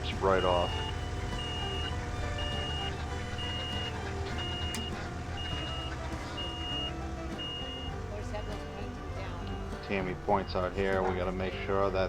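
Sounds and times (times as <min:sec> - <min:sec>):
backup alarm beeping: 0:00.0 - 0:11.1
machine engine running: 0:00.0 - 0:12.0.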